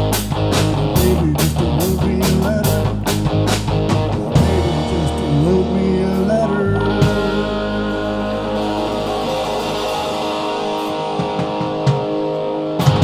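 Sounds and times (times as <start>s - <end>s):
bass note: 0.0s - 11.2s
electric guitar chord: 4.4s - 13.0s
drum hits: 7.0s - 13.0s.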